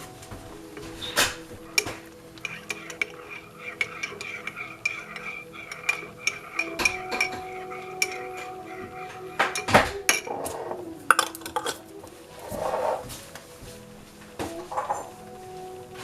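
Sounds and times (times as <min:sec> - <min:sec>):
utensils and dishes clinking: 0:00.0 - 0:15.4
scraping rustle: 0:10.0 - 0:16.0.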